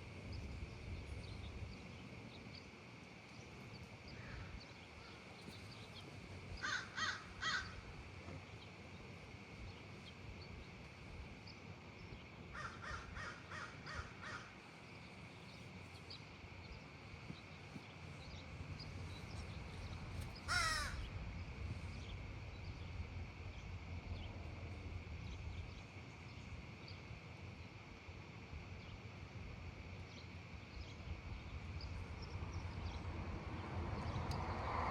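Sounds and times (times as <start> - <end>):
crow cawing: 6.6 - 7.8, 12.5 - 14.6, 20.4 - 21.1.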